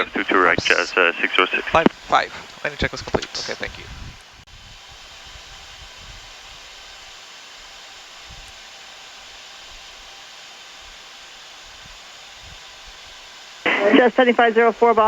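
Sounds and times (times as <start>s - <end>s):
faint low rumbles: 0.0s - 6.3s
airliner cockpit hiss: 0.0s - 15.0s.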